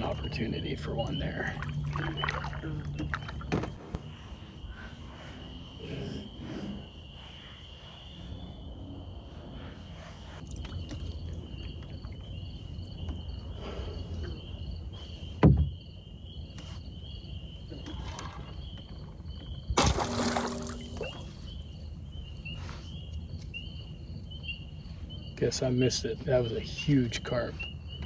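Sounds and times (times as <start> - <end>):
water splashing: 0.0 - 3.8, 19.8 - 21.5
water lapping: 0.0 - 7.6, 19.8 - 21.6
insects chirping: 0.0 - 28.0.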